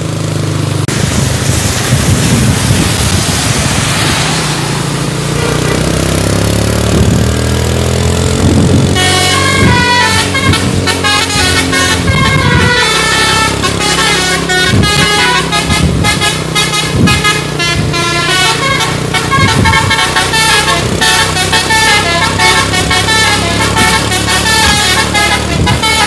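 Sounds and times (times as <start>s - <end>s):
bus engine running: 0.0s - 26.0s
bus horn playing melody: 5.2s - 26.0s.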